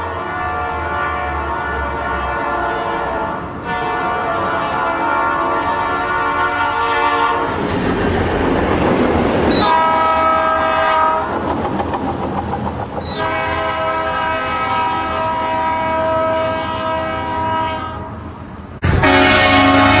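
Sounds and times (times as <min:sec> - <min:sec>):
train air horn chord: 0:00.0 - 0:07.5, 0:09.6 - 0:11.3, 0:13.2 - 0:18.2, 0:18.8 - 0:20.0
train passing rushing and clatter: 0:00.0 - 0:20.0.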